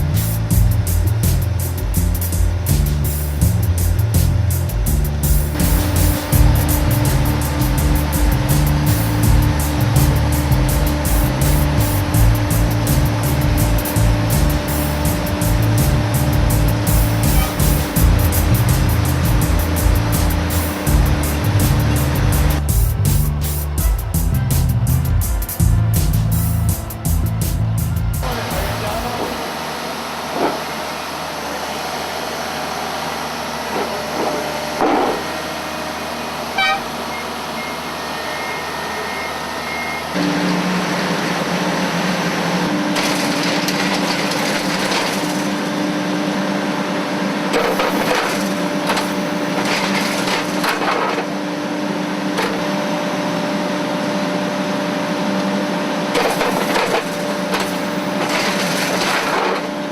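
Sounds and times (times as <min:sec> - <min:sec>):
steady low hum: 0:00.0 - 0:30.0
heavy machinery mechanical noise: 0:00.0 - 0:59.9.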